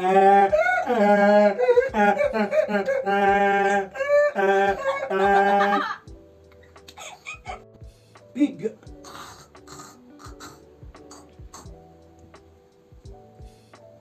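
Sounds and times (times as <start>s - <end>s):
person imitating donkey bray: 0.0s - 6.0s.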